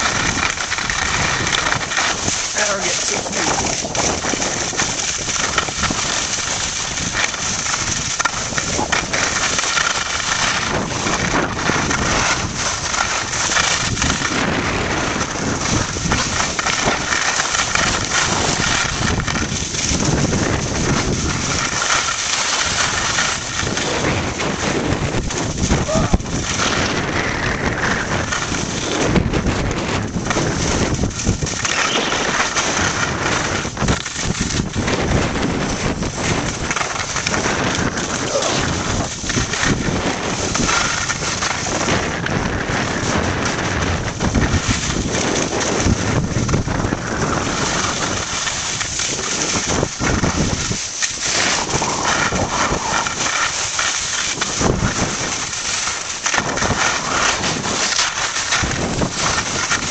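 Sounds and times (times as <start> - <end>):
skis scraping over snow: 0.0 - 59.9
wind rushing over microphone: 0.0 - 59.9.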